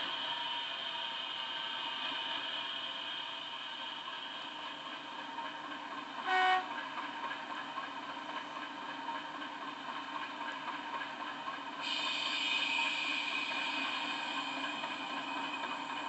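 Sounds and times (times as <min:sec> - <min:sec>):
train horn blast: 0:06.2 - 0:06.7.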